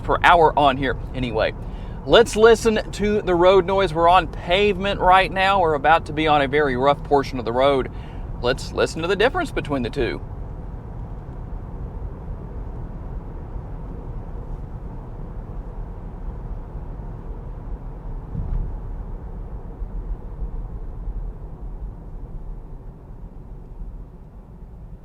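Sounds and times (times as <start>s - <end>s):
tyre and road noise in car cabin: 0.0s - 25.0s
car thump: 18.3s - 19.0s.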